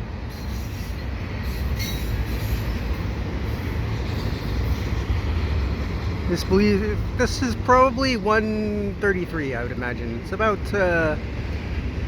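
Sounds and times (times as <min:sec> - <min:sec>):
freight train wheels rumbling: 0:00.0 - 0:12.0
high wheel squeal: 0:00.3 - 0:05.1.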